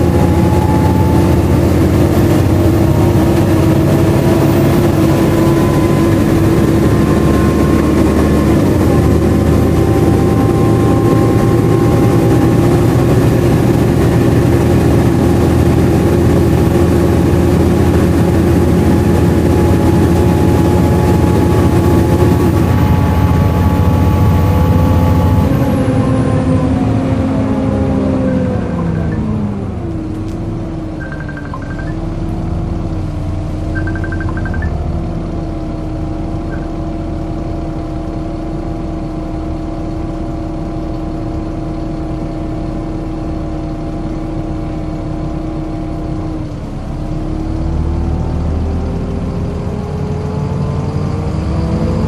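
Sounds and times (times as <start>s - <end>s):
high whine gliding down: 0.0s - 30.1s, 33.6s - 35.0s
bus engine and fan noise: 0.0s - 52.0s.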